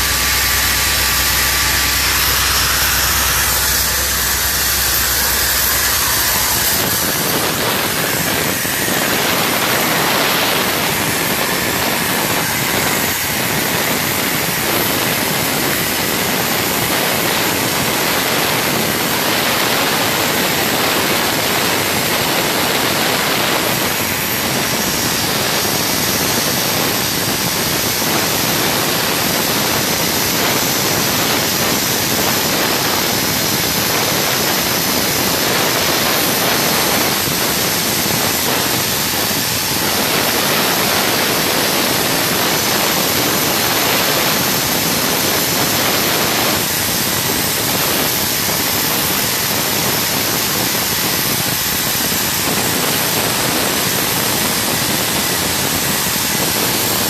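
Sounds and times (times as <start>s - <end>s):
low hum: 0.0s - 14.9s
machinery rushing hiss: 0.0s - 57.0s.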